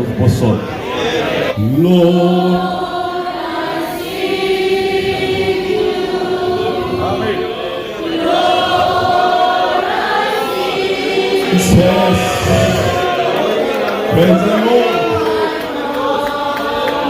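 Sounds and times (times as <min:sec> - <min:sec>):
congregation singing a worship song: 0:00.0 - 0:17.0.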